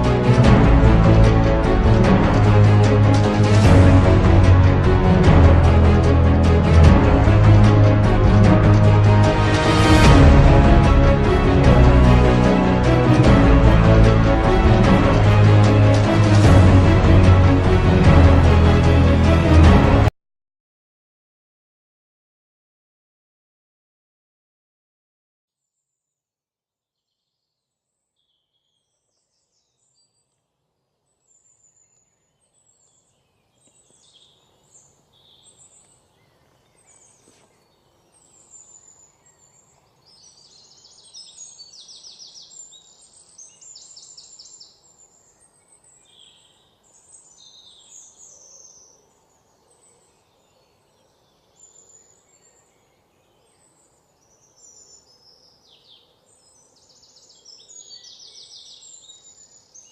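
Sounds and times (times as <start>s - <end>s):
small birds chirping and trilling: 27.1s - 59.9s.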